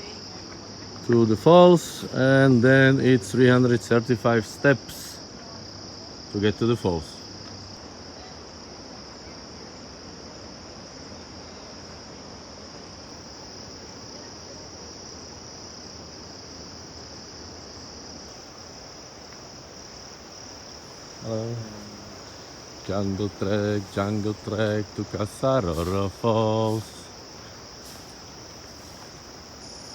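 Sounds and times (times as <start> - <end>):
insects chorus high-pitched drone: 0.0 - 29.9.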